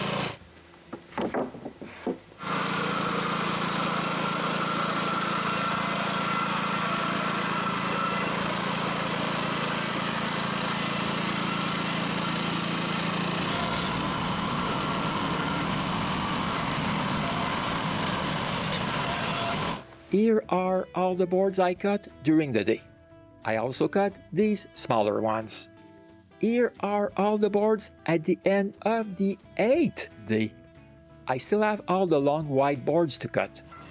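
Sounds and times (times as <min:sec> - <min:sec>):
sawmill running: 0:00.0 - 0:20.1.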